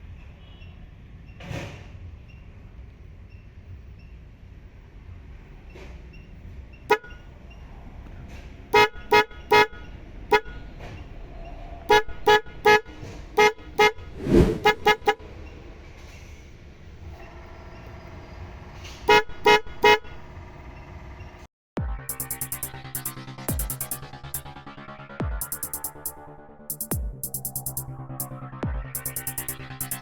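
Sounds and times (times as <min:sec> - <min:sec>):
car horn toots: 0:08.8 - 0:10.6, 0:19.1 - 0:20.2.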